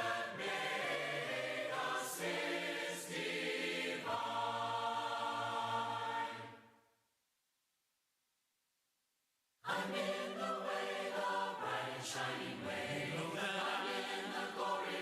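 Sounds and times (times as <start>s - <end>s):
choir singing a hymn a cappella: 0.0s - 6.7s, 9.7s - 15.0s.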